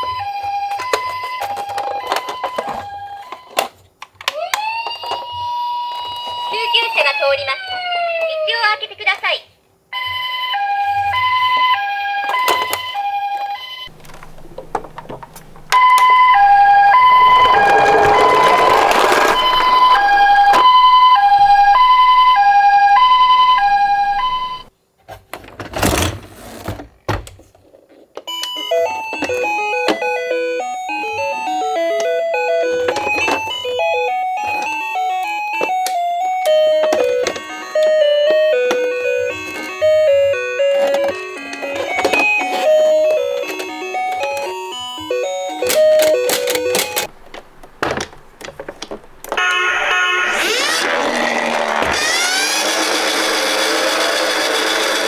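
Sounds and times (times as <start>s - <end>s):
toy two-tone siren: 0.0s - 8.3s, 10.0s - 13.9s, 15.7s - 24.7s, 28.3s - 47.1s, 49.3s - 55.0s
rustling: 36.6s - 49.5s.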